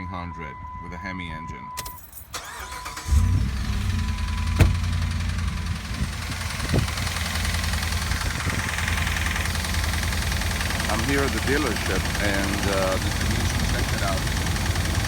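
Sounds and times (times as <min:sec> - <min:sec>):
engine running loudly: 0:03.9 - 0:15.0.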